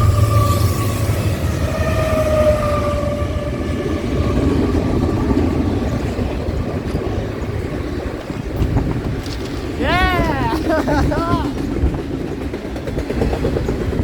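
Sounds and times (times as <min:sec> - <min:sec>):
freight train rumbling past: 0:00.0 - 0:14.0.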